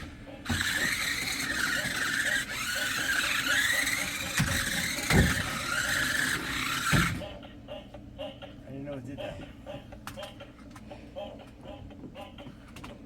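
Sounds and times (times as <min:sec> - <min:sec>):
rc car electric motors whining: 0:00.0 - 0:07.3.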